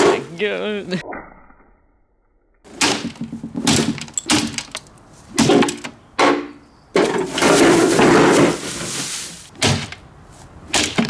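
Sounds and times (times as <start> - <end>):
plastic fan being struck: 2.7 - 9.0, 9.6 - 10.1, 10.7 - 11.0
plastic clattering: 2.7 - 10.1, 10.7 - 11.0.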